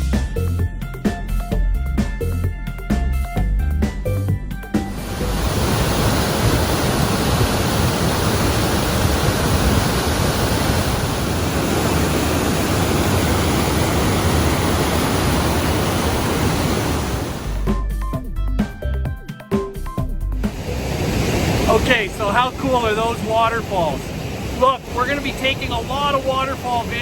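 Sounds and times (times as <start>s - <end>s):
music: 0.0s - 5.6s, 17.5s - 21.2s
waterfall rushing: 4.9s - 17.6s, 20.4s - 27.0s.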